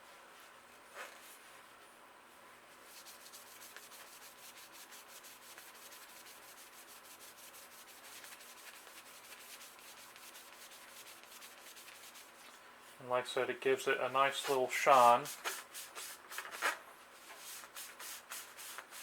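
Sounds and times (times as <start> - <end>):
rag rubbing on bike frame: 2.9 - 12.5.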